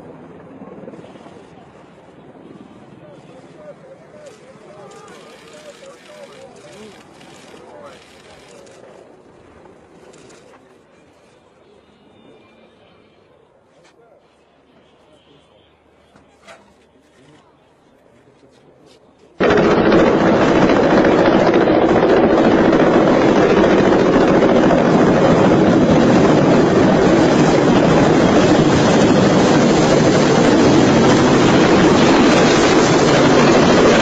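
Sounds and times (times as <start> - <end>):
helicopter engine and rotor: 19.4 - 34.0.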